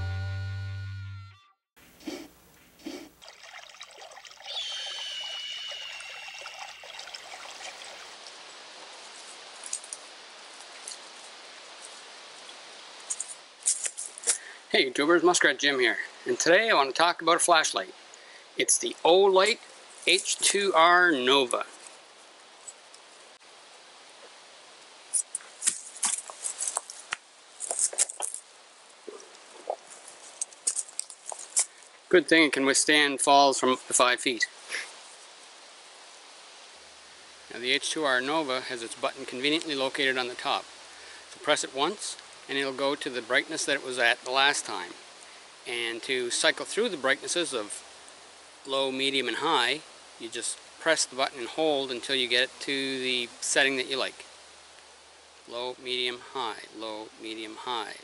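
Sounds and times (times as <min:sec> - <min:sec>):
water trickling: 0:03.1 - 0:08.3
high whistle-like tone: 0:04.5 - 0:06.4.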